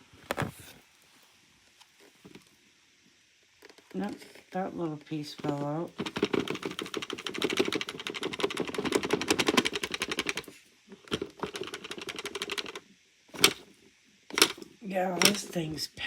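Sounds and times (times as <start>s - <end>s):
vacuum plastic parts rattling: 5.0s - 15.7s.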